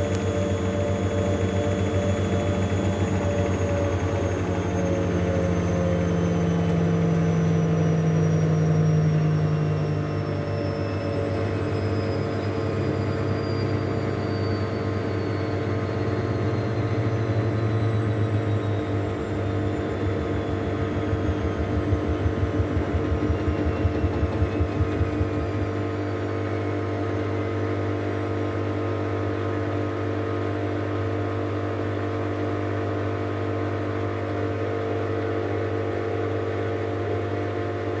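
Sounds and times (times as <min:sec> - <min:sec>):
washing machine spinning: 0:00.0 - 0:27.5.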